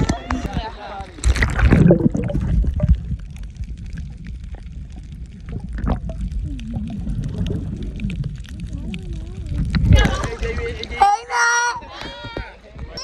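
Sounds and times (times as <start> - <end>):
water sloshing and gurgling: 0.0 - 11.0
low rumble: 1.3 - 11.0
faint voices: 8.5 - 13.0.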